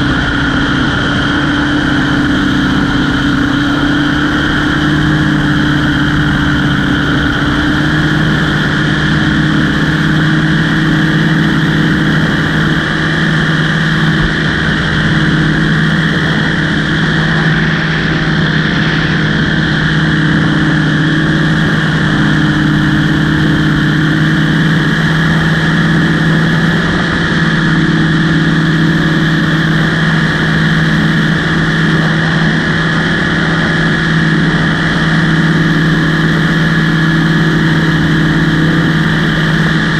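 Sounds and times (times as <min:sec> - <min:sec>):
aircraft engine drone: 0:00.0 - 0:39.9.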